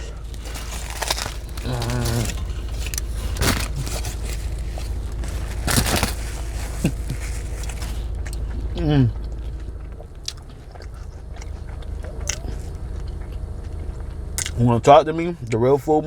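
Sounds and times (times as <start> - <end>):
wrapper crinkling: 0.0 - 8.3
chewing: 0.0 - 15.6
steady low hum: 0.0 - 16.0.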